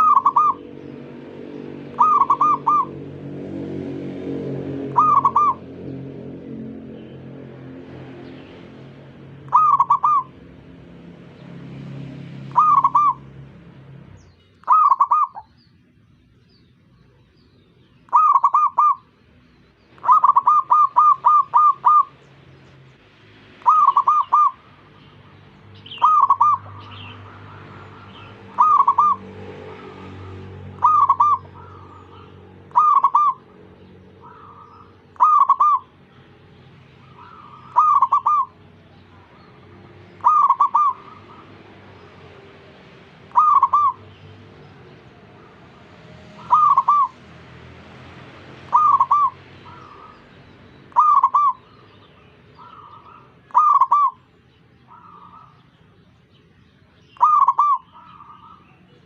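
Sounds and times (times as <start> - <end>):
faint dove coos: 0.0 - 0.6, 1.9 - 3.0, 5.0 - 5.7, 9.5 - 10.4, 18.1 - 19.0, 20.0 - 22.1, 23.6 - 24.8, 26.0 - 29.2, 30.8 - 33.5, 34.2 - 35.9, 37.0 - 41.7, 43.3 - 44.0, 46.4 - 47.1, 48.7 - 50.2, 50.9 - 51.7, 52.6 - 54.2, 57.2 - 58.8
doves cooing: 0.0 - 15.5, 18.1 - 19.2, 19.9 - 22.4, 23.5 - 36.0, 36.7 - 55.8, 57.2 - 59.0.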